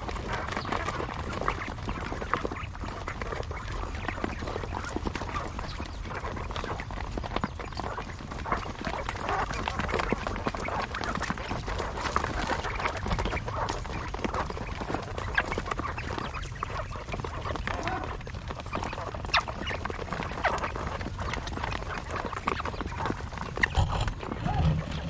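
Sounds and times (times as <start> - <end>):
quail calling and chirping: 0.0 - 25.0
low rumble: 23.6 - 25.0.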